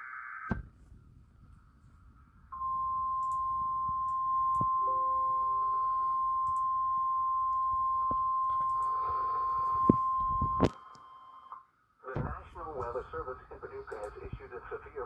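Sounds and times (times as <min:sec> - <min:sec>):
steady warning alarm beep: 0:02.5 - 0:11.5
sharp clicks: 0:13.9 - 0:14.4.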